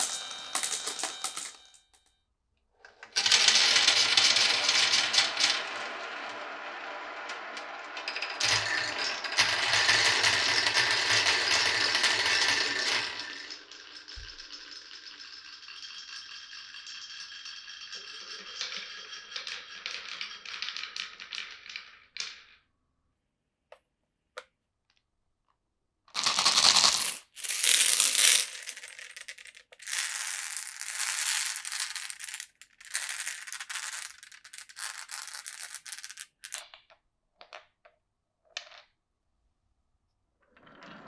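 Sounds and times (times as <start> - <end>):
marbles rattling through wooden run: 3.2 - 22.6, 26.2 - 36.9.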